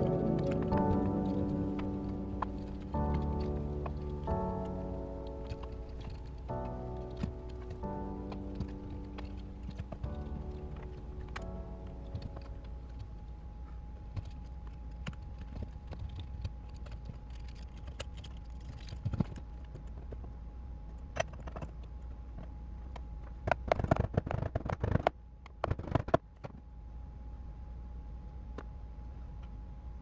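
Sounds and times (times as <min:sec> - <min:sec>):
small parts and tools clattering: 0:00.0 - 0:13.3, 0:14.0 - 0:20.2
steady low hum: 0:00.0 - 0:23.5.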